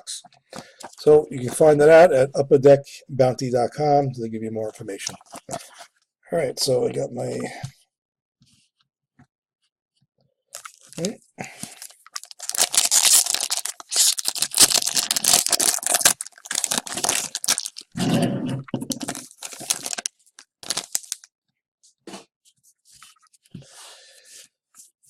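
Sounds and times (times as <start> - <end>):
wrapper tearing and crinkling: 10.6 - 11.1, 11.7 - 18.0, 18.9 - 21.3.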